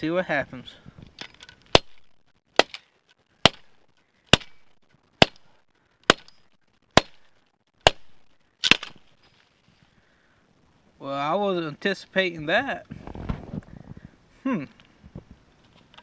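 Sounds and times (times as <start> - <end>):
axe chopping into tree: 1.7 - 2.8, 3.4 - 9.1.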